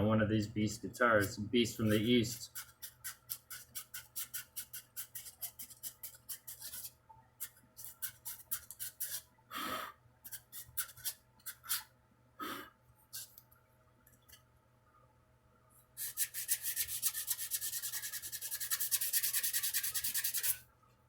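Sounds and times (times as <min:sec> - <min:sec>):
sandpaper rubbing on wood: 0:16.0 - 0:20.6.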